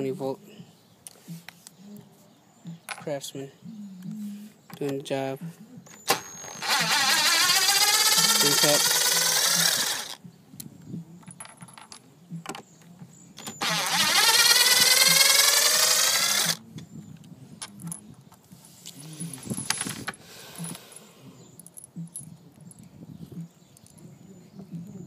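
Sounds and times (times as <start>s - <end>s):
impact driver running: 6.1s - 10.2s, 13.6s - 16.6s.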